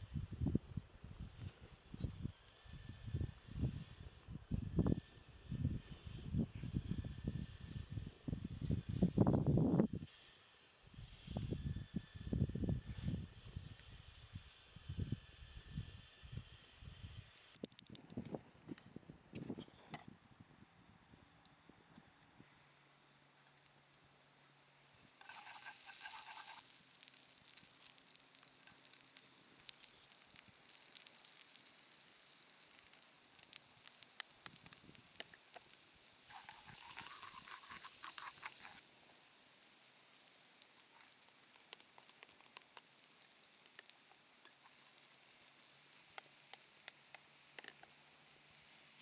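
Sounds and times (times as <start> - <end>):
crackles and pops: 17.5 - 22.6, 23.3 - 49.0
food sizzling in a pan: 17.6 - 49.0.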